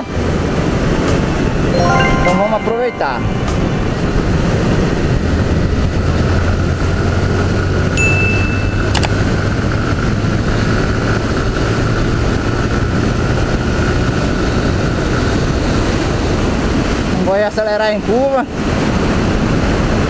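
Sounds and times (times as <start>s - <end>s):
brief high tone: 1.7s - 5.2s, 8.0s - 9.0s
wind rush on microphone: 3.9s - 8.1s, 8.8s - 20.0s.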